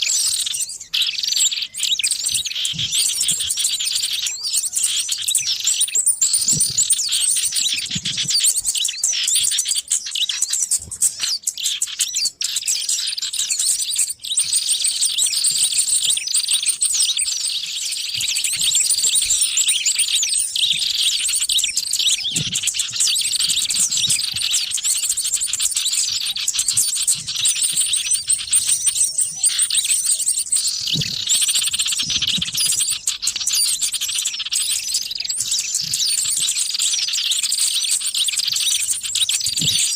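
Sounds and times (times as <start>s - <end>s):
small birds chirping and twittering: 0.0s - 39.9s.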